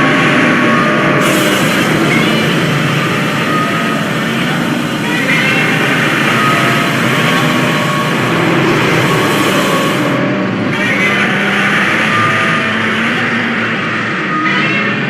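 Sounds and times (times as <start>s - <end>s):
harsh monster roar: 1.2s - 10.5s.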